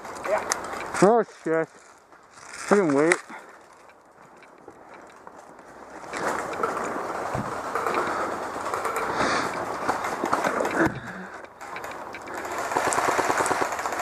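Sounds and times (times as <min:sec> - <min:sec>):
noisy movement: 0:00.0 - 0:14.0
airsoft gun firing full-auto: 0:11.8 - 0:14.0.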